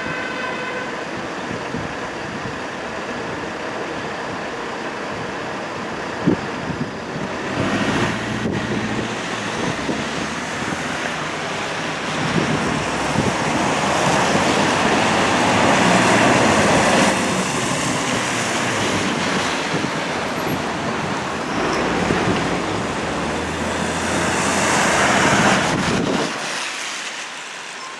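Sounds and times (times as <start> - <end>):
road traffic: 0.0 - 27.9
wind buffeting microphone: 5.2 - 26.6
vehicle passing close by: 7.3 - 27.2.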